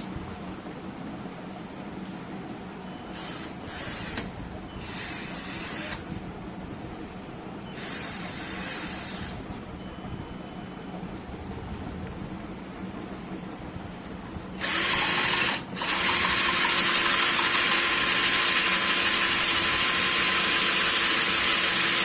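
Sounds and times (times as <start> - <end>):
cordless drill motor running: 3.1 - 6.1, 7.7 - 9.4, 14.6 - 22.0.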